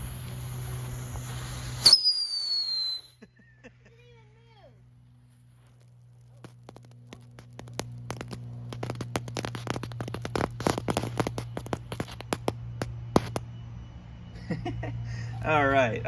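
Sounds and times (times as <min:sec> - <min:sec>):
crackling pops: 0:00.0 - 0:03.1, 0:05.3 - 0:13.5
sharp firework crack: 0:00.0 - 0:03.1, 0:06.2 - 0:13.4
firework hissing: 0:00.0 - 0:03.2, 0:06.6 - 0:12.5.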